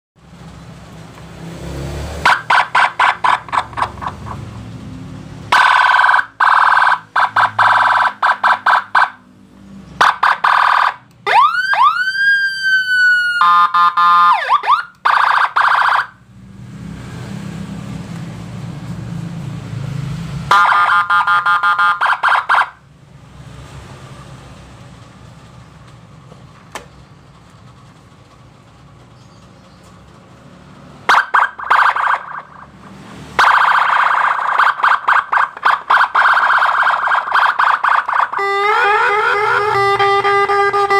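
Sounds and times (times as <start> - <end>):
electronic siren cycling tones: 5.5 - 9.3, 10.0 - 16.2, 20.5 - 22.8, 31.1 - 40.9.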